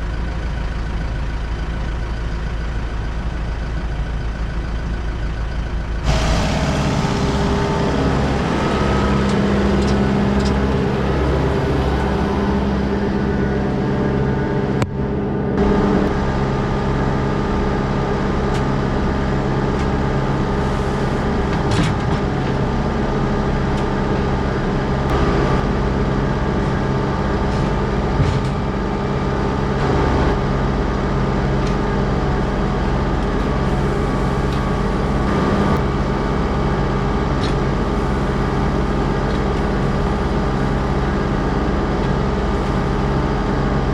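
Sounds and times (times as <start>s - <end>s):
tractor engine running: 0.0s - 43.9s.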